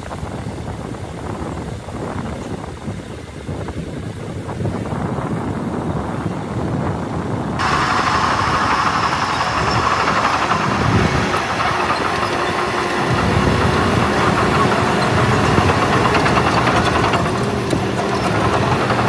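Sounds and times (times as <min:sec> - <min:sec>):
heavy diesel engine running: 0:00.0 - 0:19.0
mid-pitched engine rasp: 0:00.1 - 0:19.0.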